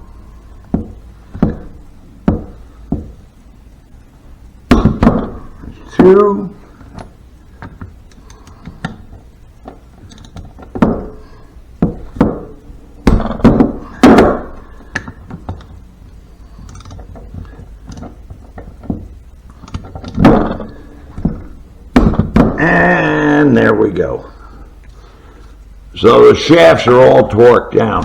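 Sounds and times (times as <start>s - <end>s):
heavy metal clunks: 0.6s - 3.3s, 4.7s - 6.2s, 6.8s - 15.8s, 16.6s - 22.8s.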